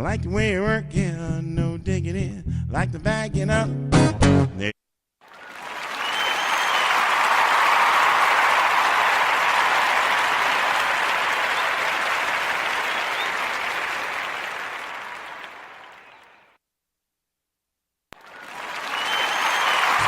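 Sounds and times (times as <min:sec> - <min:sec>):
crowd applause: 0:05.3 - 0:16.5, 0:18.2 - 0:20.0.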